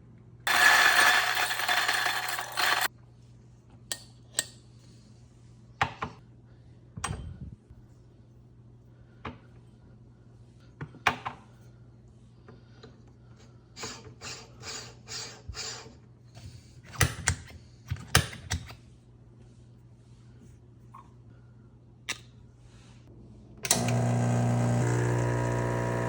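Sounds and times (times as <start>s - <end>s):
steady low hum: 3.0s - 10.8s.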